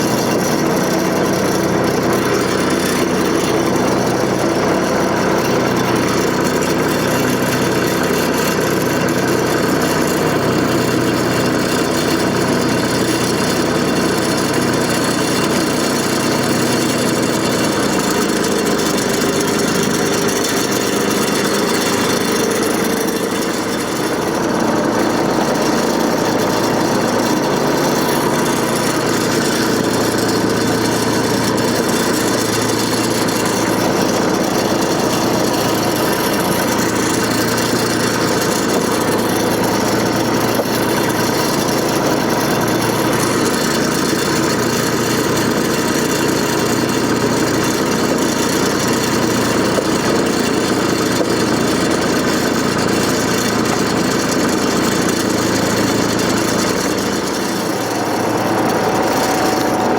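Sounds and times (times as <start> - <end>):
backhoe engine running: 0.0 - 59.9.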